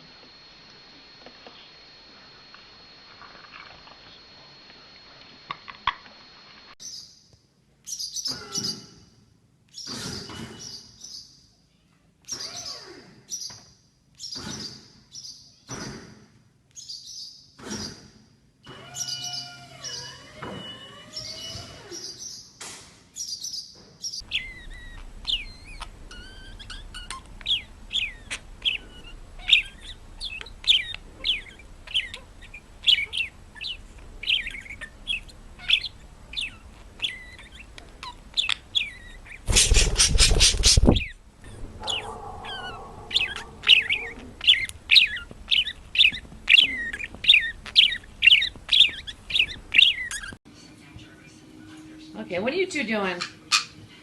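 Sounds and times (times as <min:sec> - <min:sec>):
faint steady hum: 0:00.0 - 0:09.8, 0:24.2 - 0:54.0
bird chirping: 0:06.8 - 0:07.2, 0:07.8 - 0:09.0, 0:23.2 - 0:50.4.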